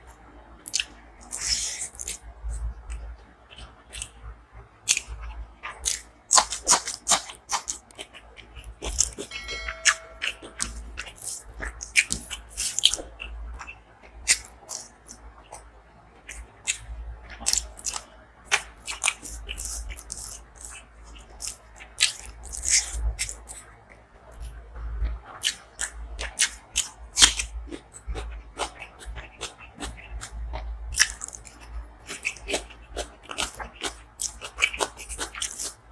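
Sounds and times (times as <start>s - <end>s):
person chewing crunchy food: 0.7s - 2.2s, 2.9s - 4.2s, 4.9s - 15.6s, 16.2s - 23.6s, 25.4s - 35.8s
wet mouth clicks: 0.7s - 2.2s, 2.9s - 4.2s, 4.9s - 5.1s, 5.8s - 9.3s, 10.2s - 15.6s, 17.4s - 23.6s, 31.0s - 35.8s
low steady hum: 8.5s - 14.2s.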